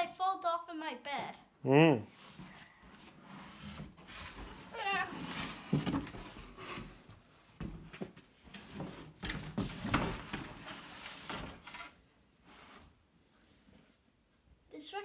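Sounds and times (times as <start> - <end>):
cardboard rustling and scraping: 2.2 - 13.0.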